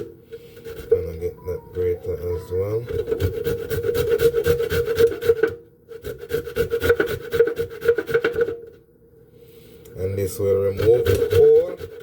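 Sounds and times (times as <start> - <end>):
rasping on a metal grater: 0.0 - 1.2, 2.9 - 8.6, 10.4 - 12.0.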